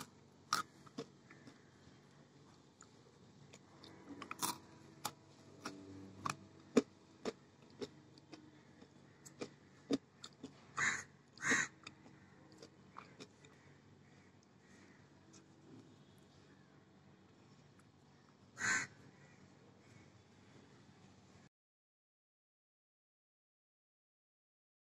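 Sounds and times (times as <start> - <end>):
crunching a crisp snack: 2.5 - 13.6.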